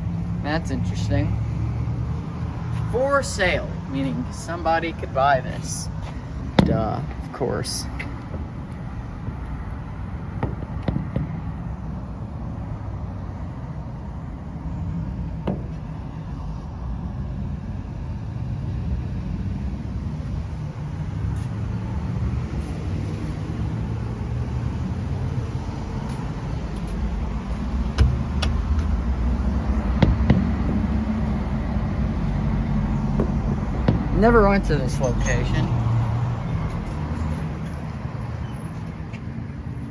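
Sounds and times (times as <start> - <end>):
passing cars rumble: 0.0 - 39.9.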